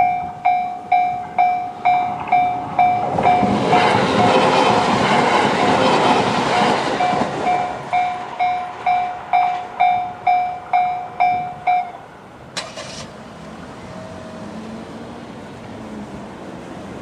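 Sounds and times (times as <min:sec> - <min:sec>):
railway crossing alarm ding: 0:00.0 - 0:05.3, 0:06.4 - 0:12.1.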